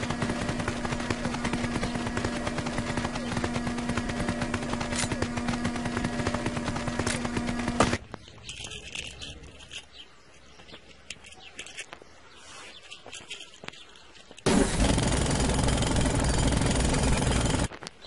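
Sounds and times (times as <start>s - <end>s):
faint scrapes: 11.4s - 13.6s.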